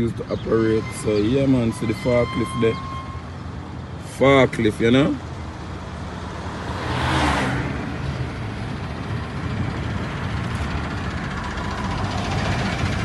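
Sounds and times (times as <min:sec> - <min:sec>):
road noise: 0:00.0 - 0:13.0
vehicle engine running: 0:07.9 - 0:13.0.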